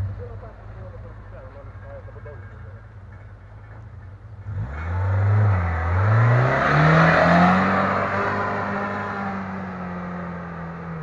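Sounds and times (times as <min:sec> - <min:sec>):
car engine revving hard: 0:04.4 - 0:11.0.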